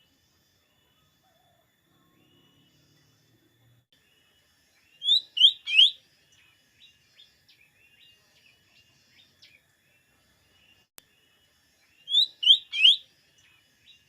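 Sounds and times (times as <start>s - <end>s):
bird chirps: 0.9s - 14.0s
bird singing whistled notes: 4.8s - 9.6s, 11.8s - 14.0s.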